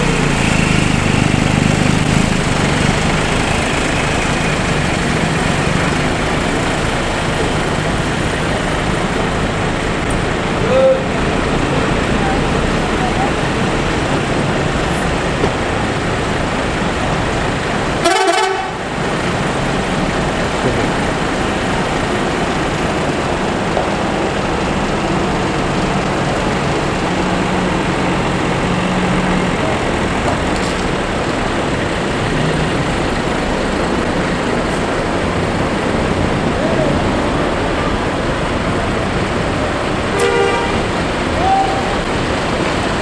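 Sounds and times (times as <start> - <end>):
road traffic with heavy engines: 0.0 - 43.0
vehicle horn blast: 18.0 - 18.8, 40.1 - 42.0.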